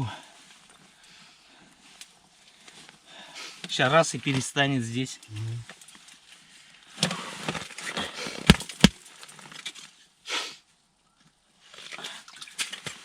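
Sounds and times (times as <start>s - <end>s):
rustling and scraping: 5.2s - 10.0s
short hiss: 10.3s - 10.6s.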